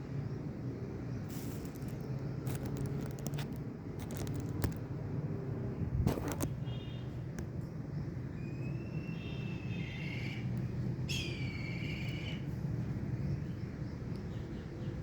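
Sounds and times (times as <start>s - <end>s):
bird of prey whistling calls: 11.1s - 12.4s.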